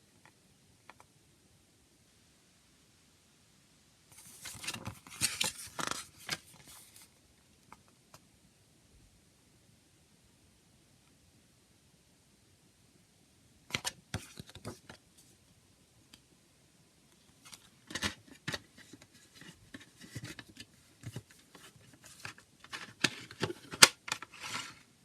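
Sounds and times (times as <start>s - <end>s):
plastic cd case clicking: 17.5s - 21.3s, 21.9s - 24.4s.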